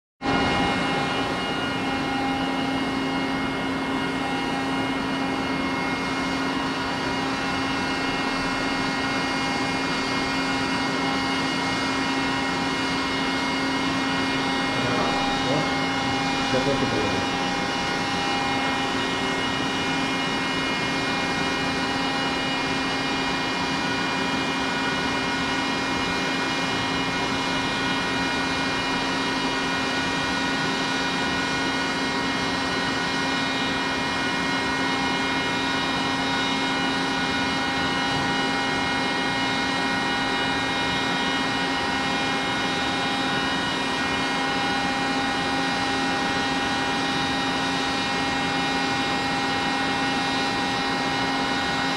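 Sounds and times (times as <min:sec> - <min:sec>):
testing machine hum: 0:00.2 - 0:09.0, 0:12.9 - 0:20.4
steady whining tones: 0:00.2 - 0:24.5.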